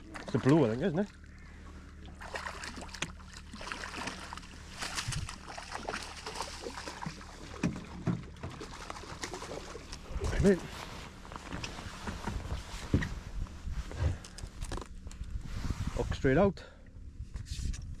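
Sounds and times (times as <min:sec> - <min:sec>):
water sloshing against boat: 0:00.0 - 0:15.8
knocks and rustles of handling: 0:07.1 - 0:15.3.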